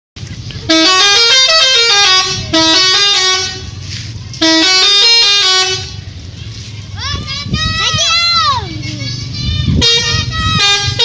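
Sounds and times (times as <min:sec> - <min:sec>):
multi-note musical bus horn: 0:00.7 - 0:03.8, 0:04.4 - 0:06.0, 0:09.7 - 0:11.0.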